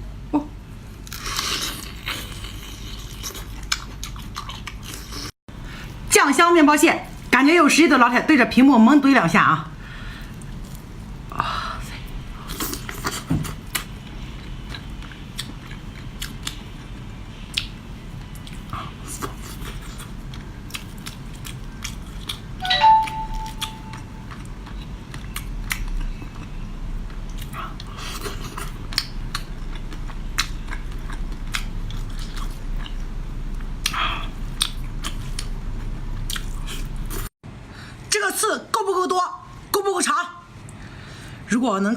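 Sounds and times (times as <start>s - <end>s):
brief pitched sound: 22.6s - 24.3s
wet chewing and biting: 27.1s - 33.0s, 33.8s - 35.6s.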